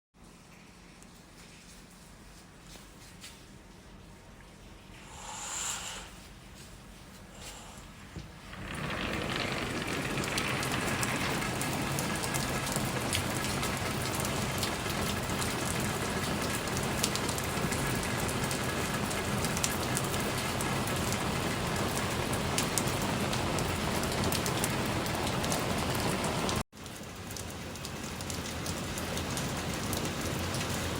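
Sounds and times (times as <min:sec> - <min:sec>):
heavy rain hissing: 0:05.0 - 0:26.6
raindrops pattering: 0:06.9 - 0:30.9.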